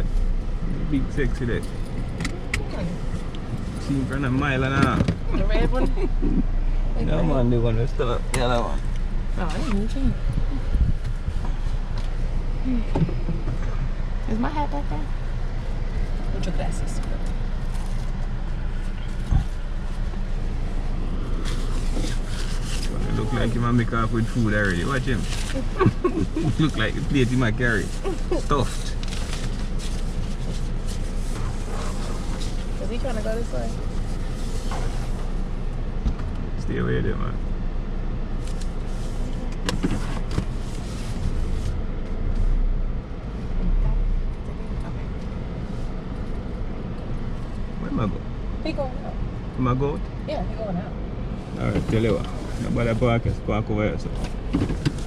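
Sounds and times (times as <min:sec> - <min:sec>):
car engine rumble: 0:00.0 - 0:55.0
road noise: 0:00.0 - 0:55.0.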